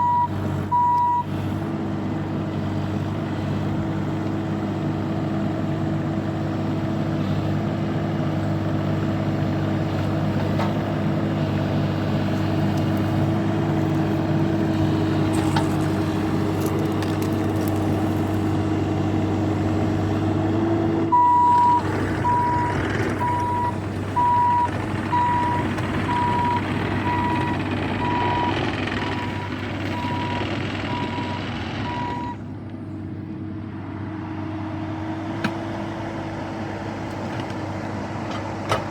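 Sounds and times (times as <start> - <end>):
reversing alarm beeping: 0.0 - 1.3, 21.1 - 32.4
diesel engine running: 0.0 - 38.9.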